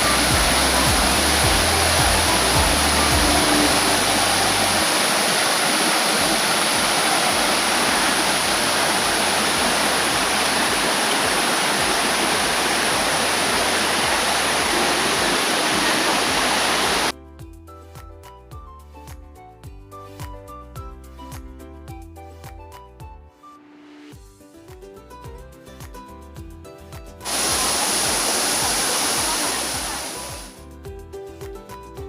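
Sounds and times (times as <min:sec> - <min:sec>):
waterfall rushing: 0:00.0 - 0:17.1, 0:27.3 - 0:30.5
soft background music: 0:00.0 - 0:32.0.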